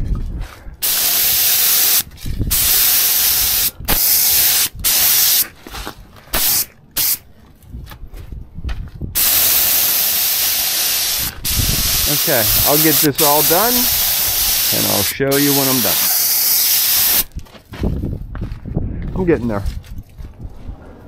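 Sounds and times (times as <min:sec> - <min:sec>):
spray gun hissing: 0:00.8 - 0:05.4, 0:06.4 - 0:07.2, 0:09.2 - 0:17.3.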